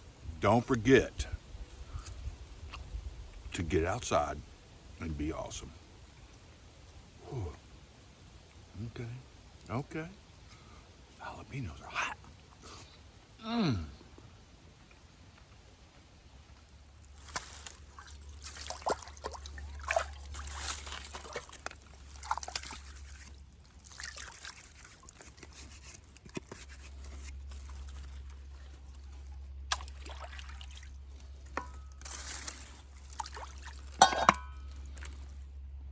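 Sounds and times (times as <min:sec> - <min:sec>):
water trickling and sloshing: 0:16.6 - 0:35.6.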